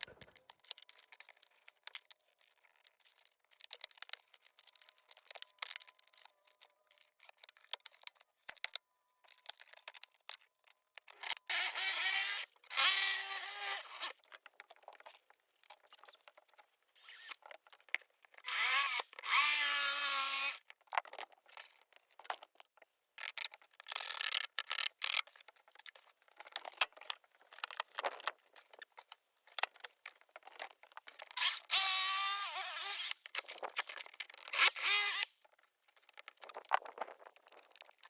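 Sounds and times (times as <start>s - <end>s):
hand work scrapes and clicks: 0.0s - 38.0s
cordless drill bursts: 11.5s - 14.2s, 18.5s - 20.6s, 31.4s - 33.4s, 34.6s - 35.4s.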